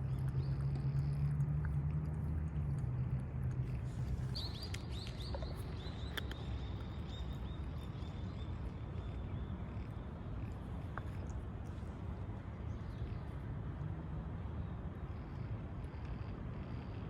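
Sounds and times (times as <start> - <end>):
low background rumble: 0.0 - 17.0
small bird chirping: 3.6 - 11.3.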